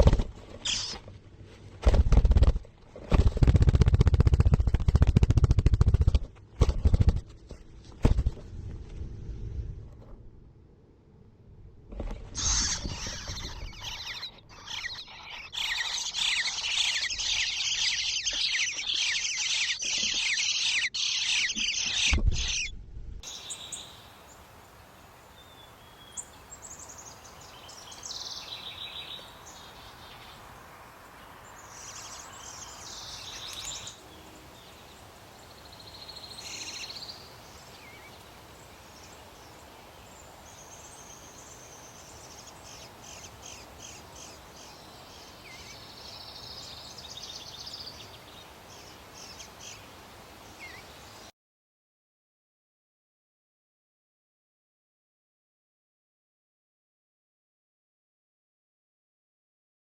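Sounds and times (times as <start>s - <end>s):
nestlings chirping: 0.6s - 1.0s, 12.3s - 24.0s, 39.0s - 49.8s
short bird calls: 0.6s - 1.0s, 12.3s - 22.7s.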